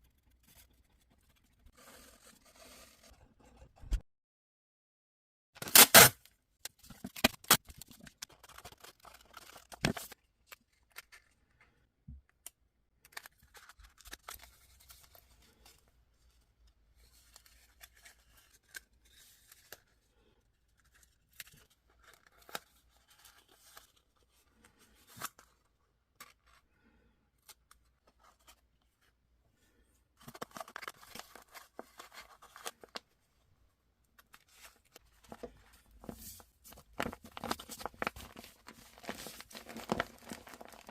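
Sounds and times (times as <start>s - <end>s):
handling and scraping noises: 34.1s - 40.9s.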